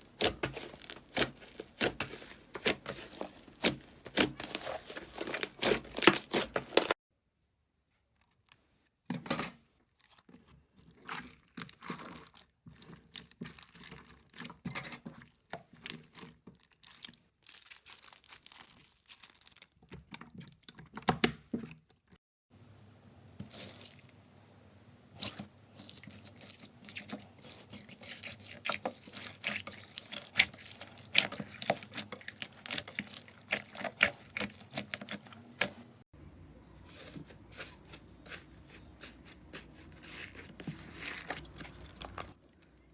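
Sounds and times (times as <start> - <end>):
slime crackling and popping: 0.2 - 7.0.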